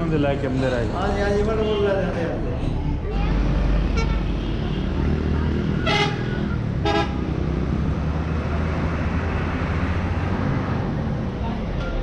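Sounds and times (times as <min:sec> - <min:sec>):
engine rumbling: 0:00.0 - 0:12.0.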